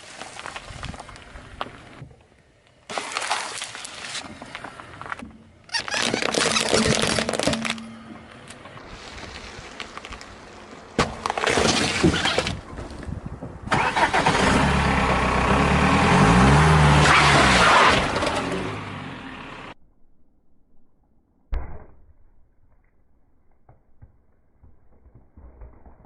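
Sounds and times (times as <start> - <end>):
sharp cracks and crackling: 2.9 - 12.7, 23.6 - 26.0
car engine revving: 13.8 - 19.8.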